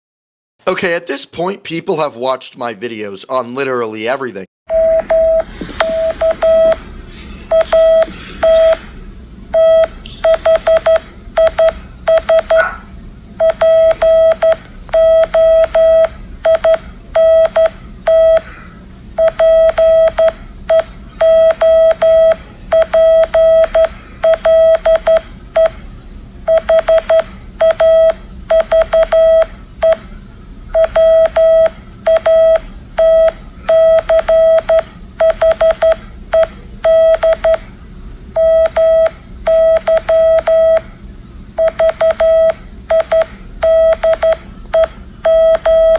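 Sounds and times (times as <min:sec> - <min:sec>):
morse code beeping: 0:04.7 - 0:06.9, 0:07.5 - 0:08.9, 0:09.5 - 0:12.7, 0:13.4 - 0:18.5, 0:19.2 - 0:25.8, 0:26.5 - 0:30.0, 0:30.8 - 0:37.7, 0:38.4 - 0:40.9, 0:41.6 - 0:45.9.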